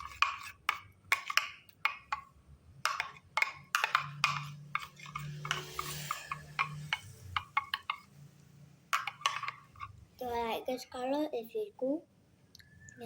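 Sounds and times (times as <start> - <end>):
stirrer tapping container sides: 0.0 - 8.1, 8.9 - 10.0.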